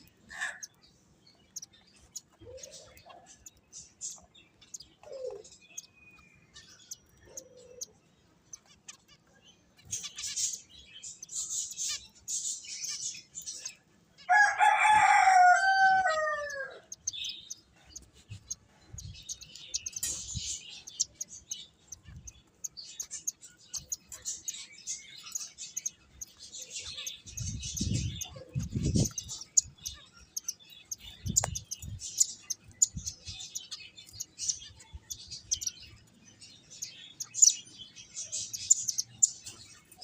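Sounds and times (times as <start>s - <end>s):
finches chirping: 0.0s - 14.6s, 16.0s - 40.0s
rooster crowing: 14.3s - 16.9s.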